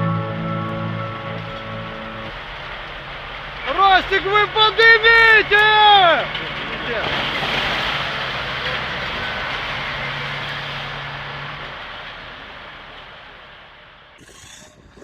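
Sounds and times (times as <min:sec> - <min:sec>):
loud rushing noise: 0:00.0 - 0:14.2
machine engine hum: 0:00.0 - 0:14.2.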